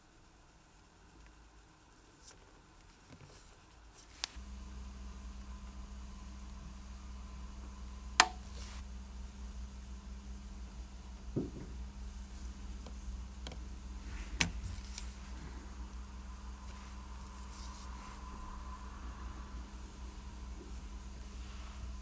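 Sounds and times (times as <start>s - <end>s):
steady low hum: 4.2s - 22.0s
soft knock on bench: 11.4s - 11.8s.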